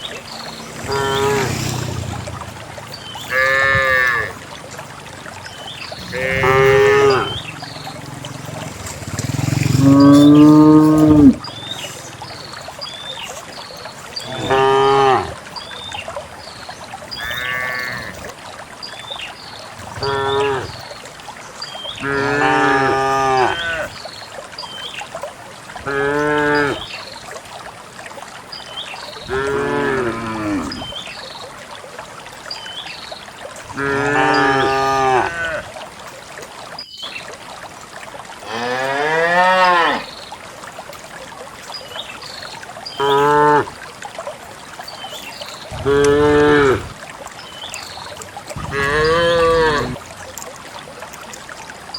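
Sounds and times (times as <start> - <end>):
cattle mooing: 0.8 - 1.6, 3.3 - 4.4, 6.0 - 7.5, 9.6 - 11.4, 33.8 - 35.6, 45.8 - 46.8, 48.7 - 50.0.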